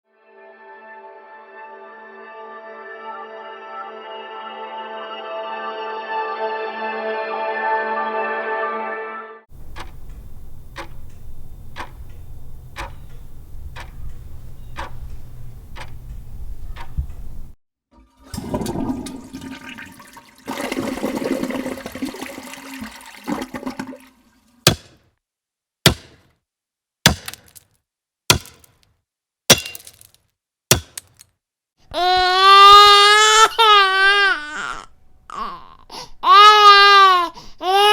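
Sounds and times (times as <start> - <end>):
sharp clicks: 9.6 - 17.6
toilet flushing: 17.9 - 24.7.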